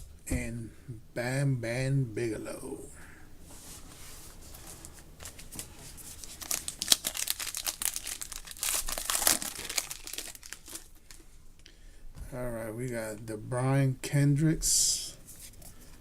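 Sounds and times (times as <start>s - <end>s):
wrapper tearing and crinkling: 6.1s - 11.2s.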